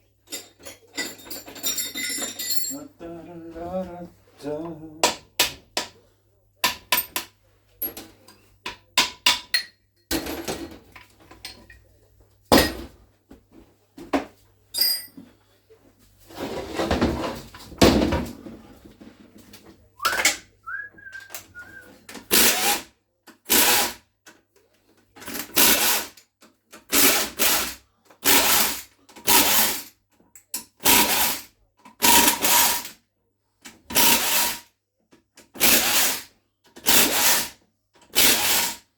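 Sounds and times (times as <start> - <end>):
power drill bursts: 22.3 - 22.8, 32.0 - 32.9, 34.0 - 34.6, 38.2 - 38.8.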